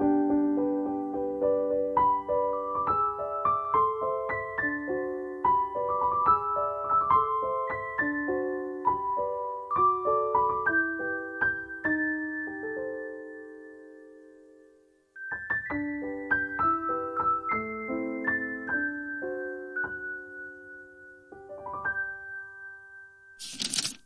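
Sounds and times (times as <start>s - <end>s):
gentle piano melody: 0.0s - 23.4s.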